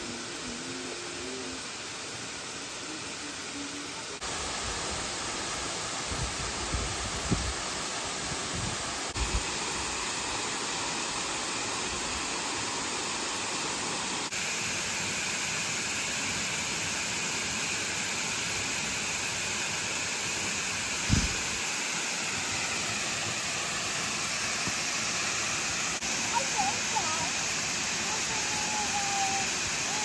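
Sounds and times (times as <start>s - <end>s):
waterfall rushing: 17.4s - 30.0s.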